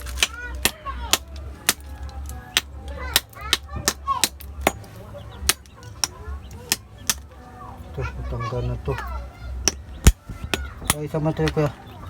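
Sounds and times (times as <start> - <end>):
shells cracked by hard knocks: 0.0 - 7.3, 9.6 - 11.6
voices: 0.0 - 12.0.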